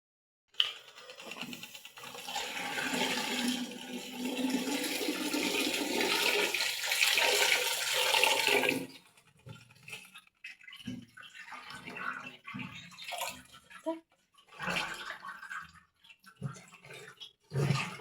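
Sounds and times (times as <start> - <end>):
water churning in washing machine: 0.9 - 18.0.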